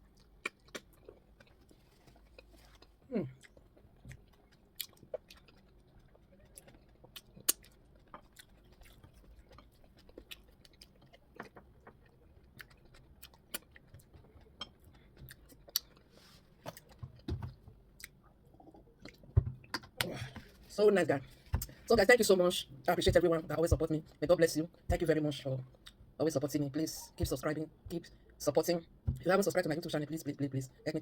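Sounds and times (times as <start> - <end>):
chewing with wet mouth smacks: 0.0 - 17.3, 17.9 - 19.4.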